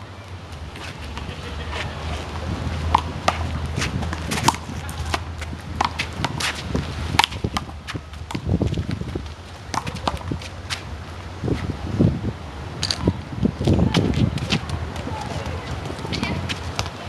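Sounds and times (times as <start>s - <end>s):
wind rumbling on microphone: 0.0s - 17.0s
shoes scuffing on court: 0.5s - 10.9s.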